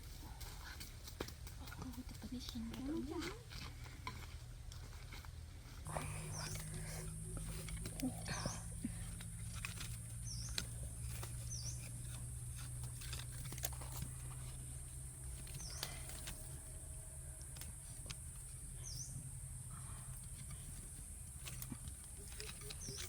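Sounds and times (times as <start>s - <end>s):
low hum: 0.0s - 23.0s
bird chirping: 5.9s - 23.0s.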